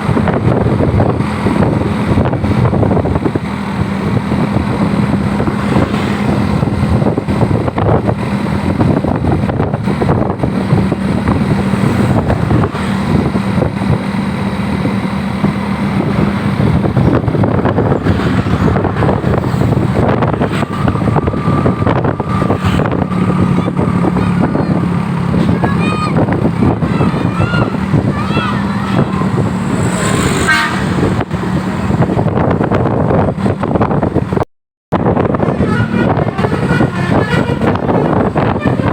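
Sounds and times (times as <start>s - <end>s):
bus engine hum: 0.0s - 34.4s, 35.0s - 38.9s
traffic noise: 0.0s - 34.4s, 35.0s - 38.9s
held horn tone: 15.9s - 31.4s, 35.0s - 38.9s
musical bus horn melody: 30.2s - 31.2s, 35.0s - 38.9s.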